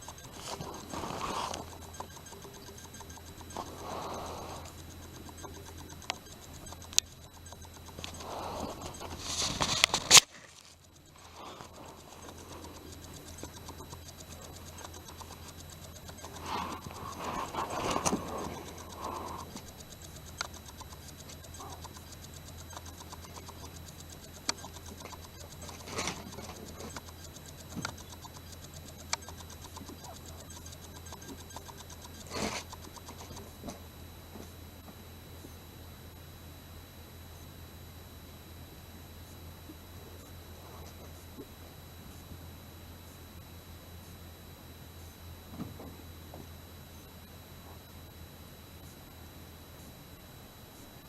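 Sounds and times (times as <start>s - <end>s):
faint clicks: 0.0s - 35.6s.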